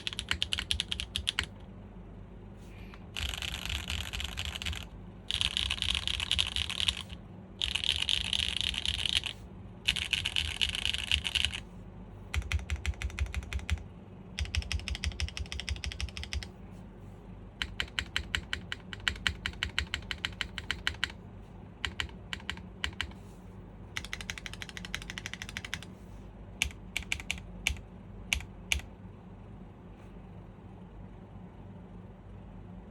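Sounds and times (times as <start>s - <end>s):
mechanical keyboard typing: 0.0s - 1.6s, 3.1s - 11.6s, 12.3s - 16.5s, 17.6s - 21.2s, 21.8s - 23.2s, 23.9s - 25.9s, 26.6s - 28.9s.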